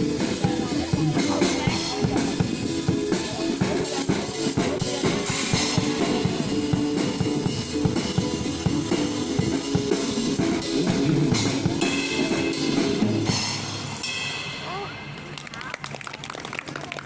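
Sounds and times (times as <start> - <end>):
guitar: 0.0 - 13.4
pop song instrumental: 0.0 - 13.8
drum kit beat: 0.0 - 15.4.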